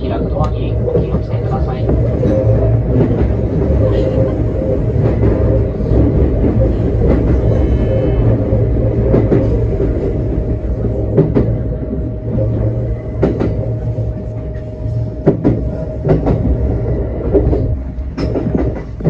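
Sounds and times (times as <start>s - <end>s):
constant hum: 0.0s - 19.0s
train rumble: 0.0s - 19.0s
sharp clicks of train: 0.2s - 4.3s, 13.2s - 13.6s, 14.5s - 16.6s, 17.3s - 19.0s.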